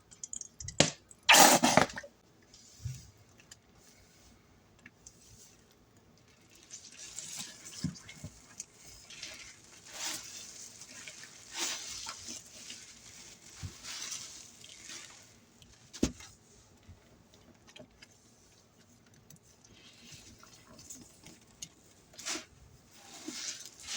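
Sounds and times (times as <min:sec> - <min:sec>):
soapy sponge squeezed: 0:01.3 - 0:02.1, 0:06.3 - 0:15.8, 0:22.1 - 0:23.9.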